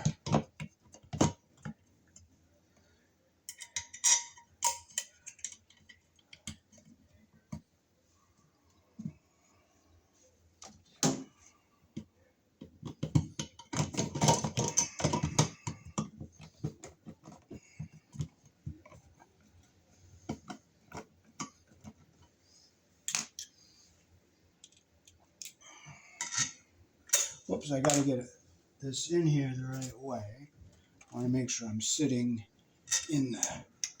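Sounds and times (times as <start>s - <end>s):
plastic clicks and knocks: 0.0s - 2.3s, 11.9s - 19.0s.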